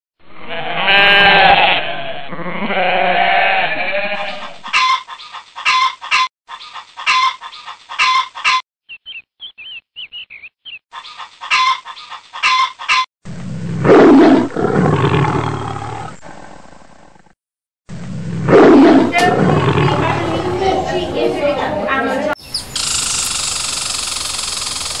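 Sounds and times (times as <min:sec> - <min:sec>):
goat bleating: 0:00.5 - 0:05.0
loud deep roar: 0:17.9 - 0:21.1
faint high chirps: 0:22.4 - 0:25.0.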